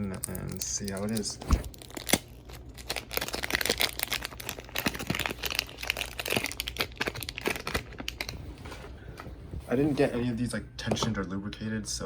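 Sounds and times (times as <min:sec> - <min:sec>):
plastic packaging crinkling: 0:00.0 - 0:08.9.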